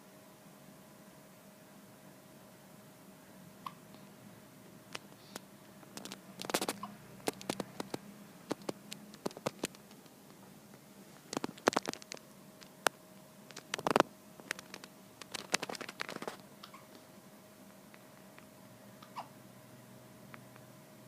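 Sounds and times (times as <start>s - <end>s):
person hiccuping: 19.0s - 19.3s.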